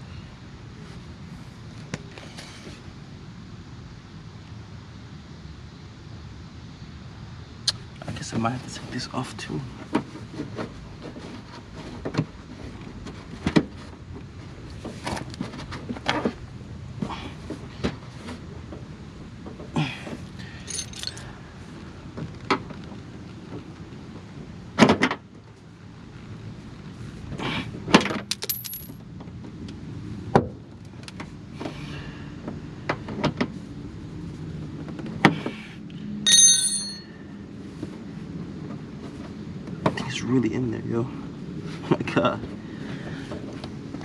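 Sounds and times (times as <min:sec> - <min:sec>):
short metallic ring: 0:36.2 - 0:37.2.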